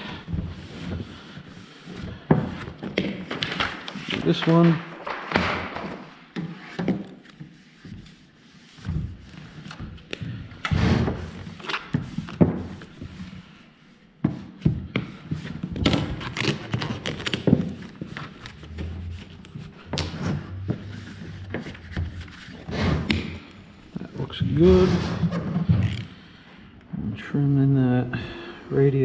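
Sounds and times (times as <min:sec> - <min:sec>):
vinyl panels rustling: 0:00.0 - 0:10.6.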